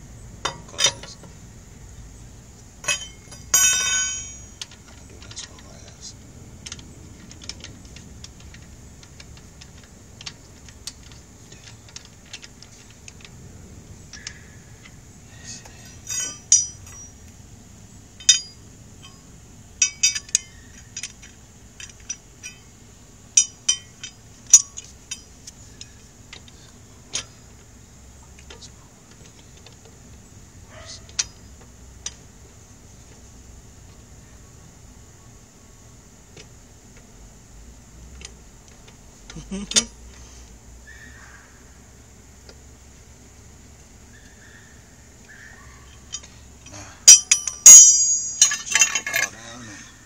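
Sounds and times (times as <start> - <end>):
metallic clinks of lug nuts and wrench: 0.4 - 1.4, 2.8 - 5.7, 6.6 - 13.4, 15.6 - 17.4, 18.2 - 27.7, 30.8 - 32.3, 38.2 - 40.1, 45.2 - 49.9.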